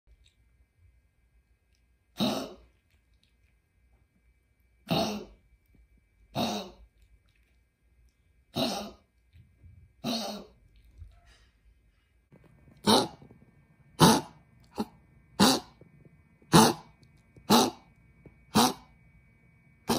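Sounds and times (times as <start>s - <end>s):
dog coughing: 4.9s - 5.3s, 6.3s - 6.8s, 8.5s - 9.0s, 10.0s - 10.6s, 12.8s - 13.2s, 14.0s - 15.8s, 16.5s - 16.9s, 17.5s - 17.8s, 18.5s - 18.9s.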